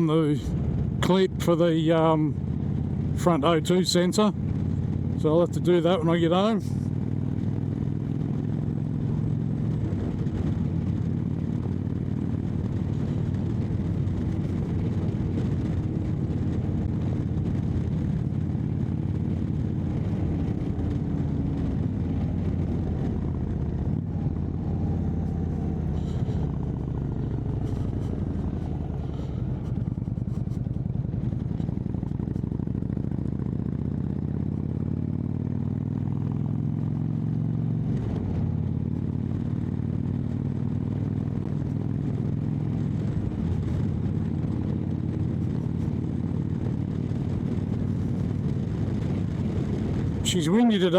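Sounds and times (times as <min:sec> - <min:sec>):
motorcycle engine cruising: 0:00.0 - 0:50.9.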